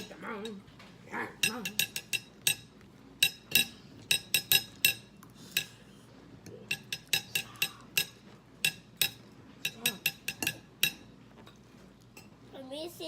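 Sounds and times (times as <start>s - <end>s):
cutlery clinking on plates: 1.4s - 5.8s, 6.5s - 11.5s.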